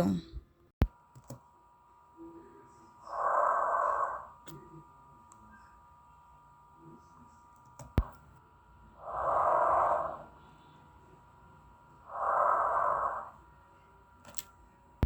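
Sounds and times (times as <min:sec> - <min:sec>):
person breathing deeply: 0:09.0 - 0:10.4, 0:12.1 - 0:13.4.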